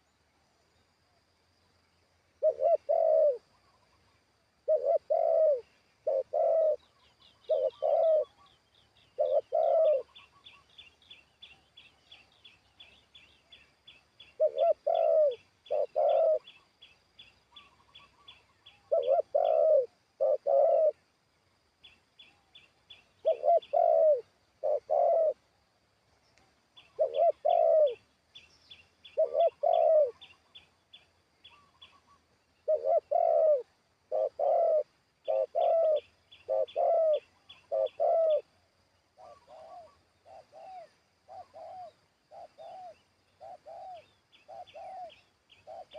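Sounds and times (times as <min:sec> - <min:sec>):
dove cooing: 0:02.4 - 0:10.7, 0:14.2 - 0:16.7, 0:17.5 - 0:21.1, 0:23.0 - 0:25.5, 0:26.8 - 0:28.1, 0:29.0 - 0:30.6, 0:31.4 - 0:45.9.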